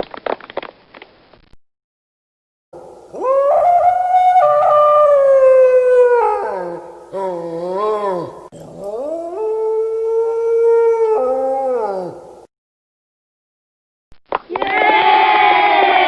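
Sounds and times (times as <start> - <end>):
dog howling: 3.1 - 12.4.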